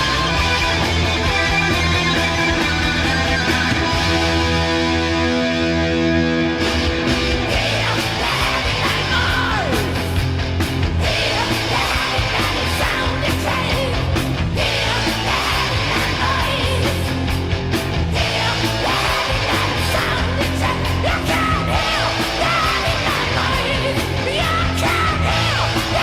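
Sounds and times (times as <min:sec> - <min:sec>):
heavy metal band playing: 0:00.0 - 0:26.0
shouted vocals: 0:07.3 - 0:10.2, 0:11.0 - 0:17.1, 0:18.1 - 0:26.0.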